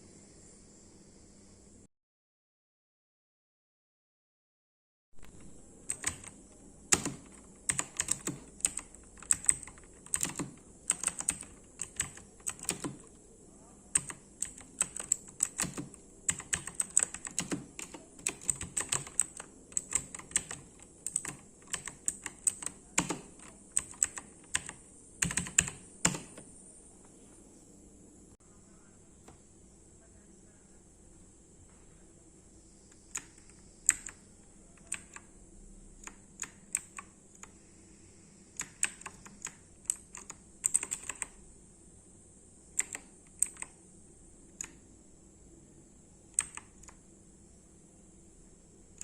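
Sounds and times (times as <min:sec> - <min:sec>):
mechanical keyboard key clicks: 0:05.2 - 0:13.1, 0:13.9 - 0:26.4, 0:33.0 - 0:34.2, 0:34.8 - 0:35.3, 0:38.6 - 0:41.4, 0:42.8 - 0:43.7, 0:46.3 - 0:47.0.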